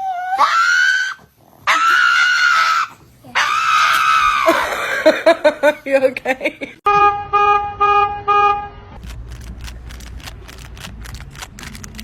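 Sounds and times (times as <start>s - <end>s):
horn beeping: 6.9s - 9.0s
rustling: 9.0s - 12.0s.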